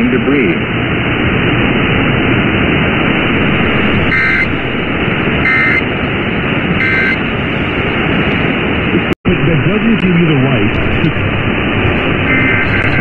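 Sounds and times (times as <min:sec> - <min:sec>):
radio static: 0:00.0 - 0:13.0
warbling digital data tones: 0:03.3 - 0:05.9, 0:06.8 - 0:07.2, 0:11.2 - 0:13.0.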